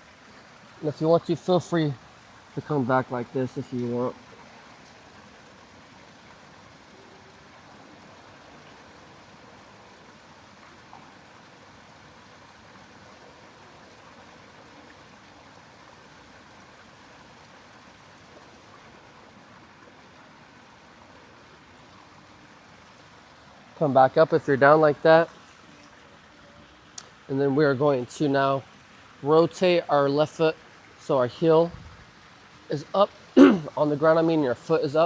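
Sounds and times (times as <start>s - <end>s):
faint background hiss: 0.0s - 35.0s.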